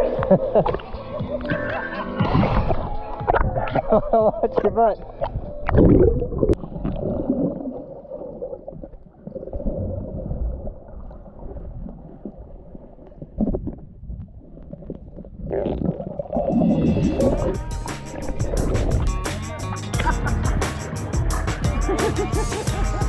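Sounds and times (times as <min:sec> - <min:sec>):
underwater gurgling and bubbling: 0:00.0 - 0:17.6.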